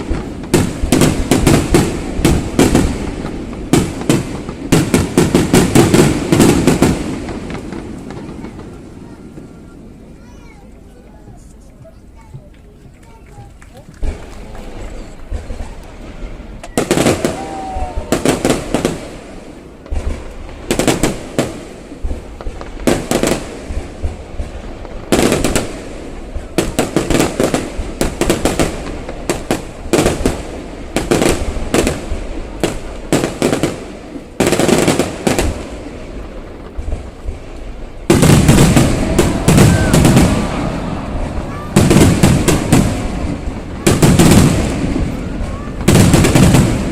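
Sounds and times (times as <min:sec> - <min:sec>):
fireworks bangs and crackling: 0:00.0 - 0:46.9.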